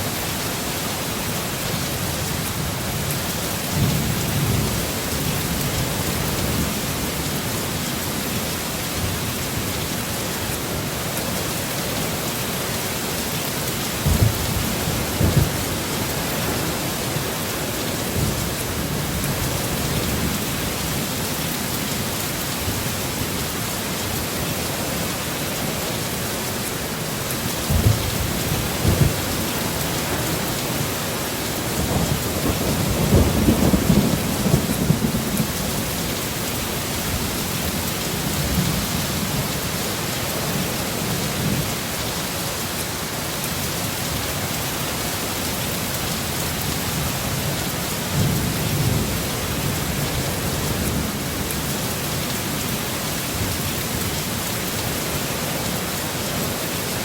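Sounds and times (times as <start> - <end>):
steady rain: 0.0 - 57.0
thunder rumbling: 13.9 - 20.9, 27.5 - 36.2.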